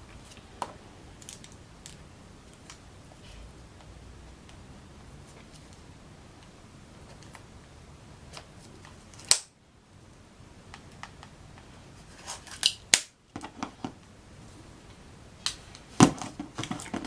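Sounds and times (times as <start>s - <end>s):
packaging clicks and snips: 8.3s - 9.5s.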